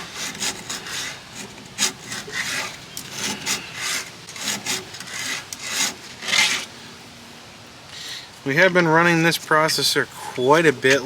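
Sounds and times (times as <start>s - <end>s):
file rasping on chain teeth: 0.0s - 6.7s.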